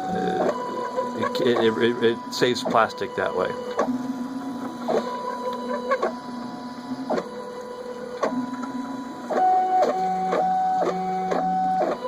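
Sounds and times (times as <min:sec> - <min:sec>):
stepper motors whining: 0:00.0 - 0:12.0.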